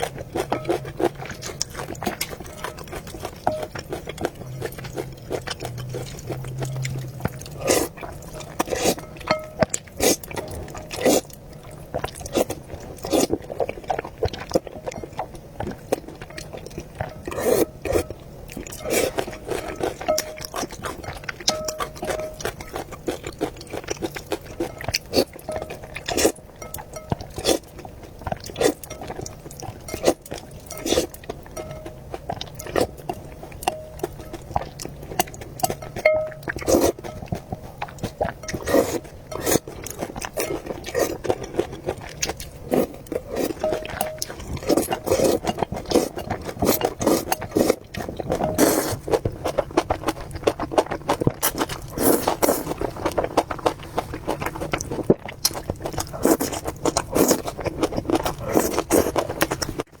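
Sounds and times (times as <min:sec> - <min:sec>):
wet chewing and mouth smacks: 0:00.0 - 1:00.0
noodle slurps: 0:48.4 - 0:49.2.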